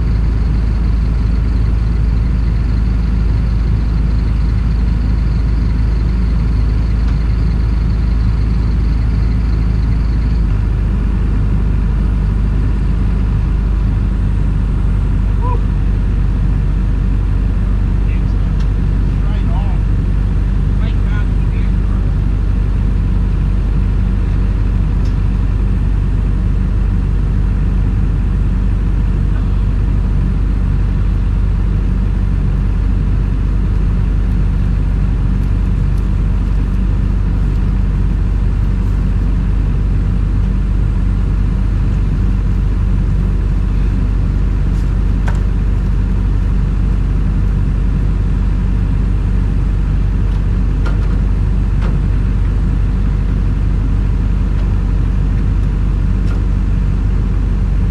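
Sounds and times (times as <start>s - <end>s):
excavator engine running: 0.0s - 57.9s.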